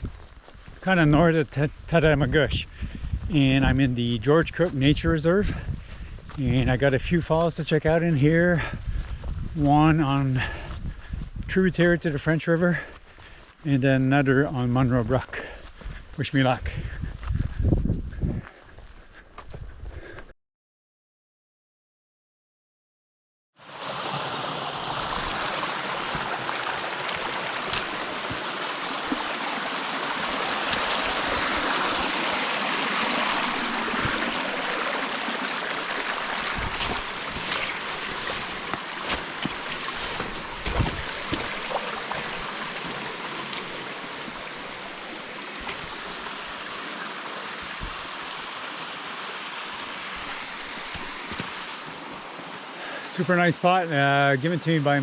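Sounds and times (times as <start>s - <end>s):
waterfall rushing: 23.6s - 52.8s
low thumps: 36.4s - 42.5s.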